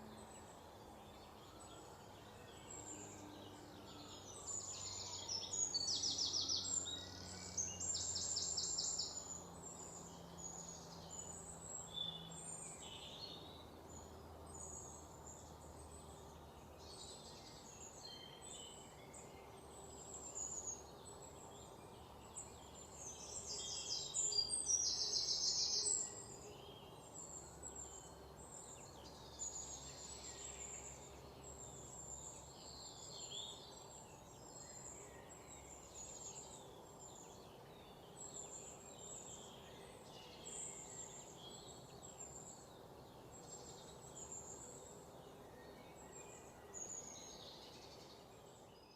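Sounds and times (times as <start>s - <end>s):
birds chirping and singing: 14.6s - 48.9s.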